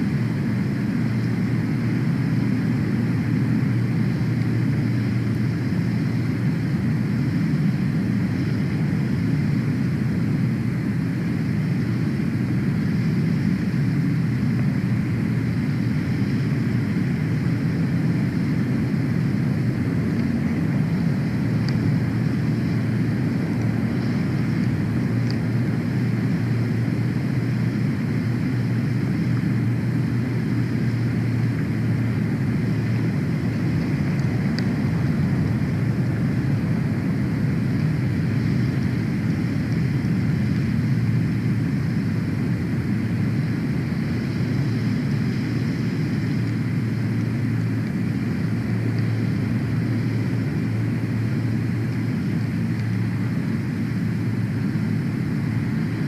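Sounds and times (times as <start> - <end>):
steady low rumble: 0.0 - 56.0
faint high ticks: 52.7 - 53.0.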